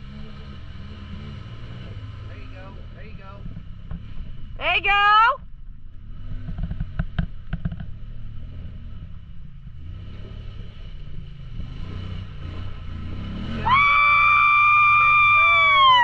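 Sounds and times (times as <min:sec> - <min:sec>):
vehicle engine rumbling: 0:00.0 - 0:16.0.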